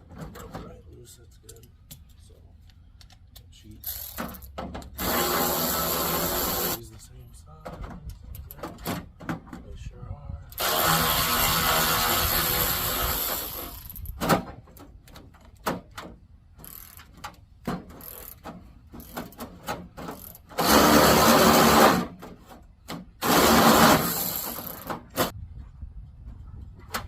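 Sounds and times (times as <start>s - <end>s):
cordless power driver running: 5.0s - 6.8s, 10.6s - 13.7s, 20.6s - 22.1s, 23.2s - 25.3s.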